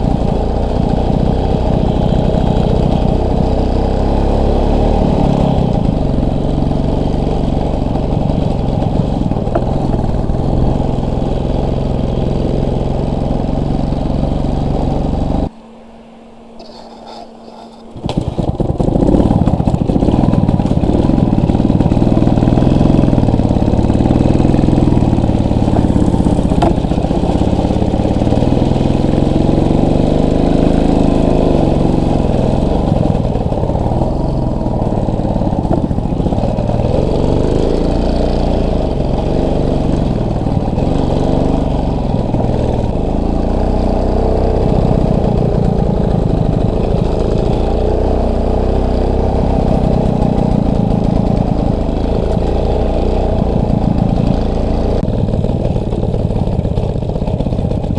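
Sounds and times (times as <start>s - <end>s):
small motorcycle engine: 0.0s - 57.9s.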